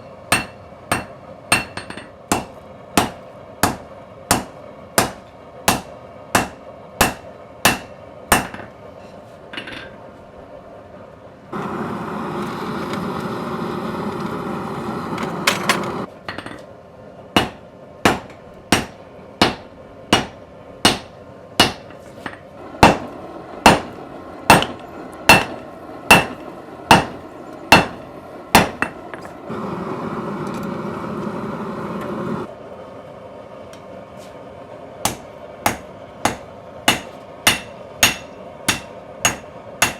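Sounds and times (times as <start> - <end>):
hammer striking metal on anvil: 0.3 - 8.7, 17.4 - 29.4, 35.0 - 39.9.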